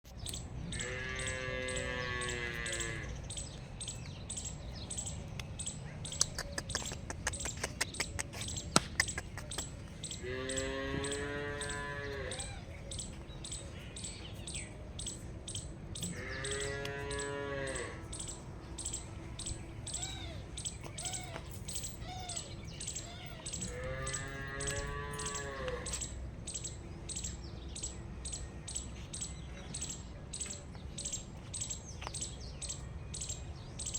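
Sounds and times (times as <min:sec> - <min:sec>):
cows mooing: 0:00.7 - 0:03.2, 0:10.1 - 0:12.7, 0:16.0 - 0:18.3, 0:23.5 - 0:26.1.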